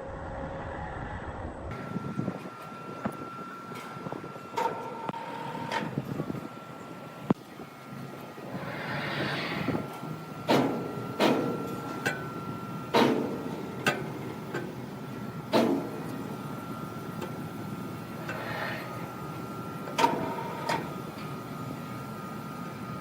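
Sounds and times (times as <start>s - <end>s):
high-pitched machine hum: 0.0s - 12.9s.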